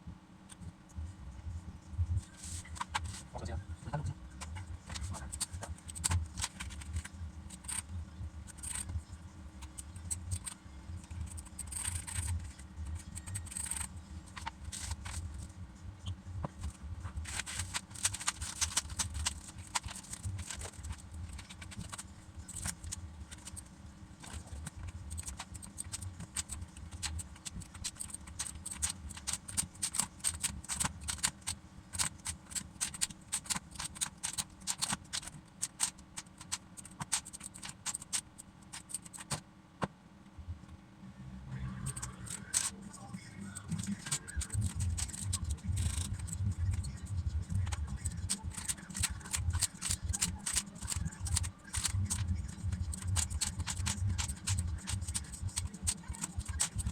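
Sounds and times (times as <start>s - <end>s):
steady low hum: 0.0s - 56.9s
plastic keycap clicks and rattles: 5.2s - 7.8s, 8.5s - 8.9s, 11.2s - 15.2s, 17.3s - 23.6s, 24.2s - 39.4s, 43.6s - 56.9s.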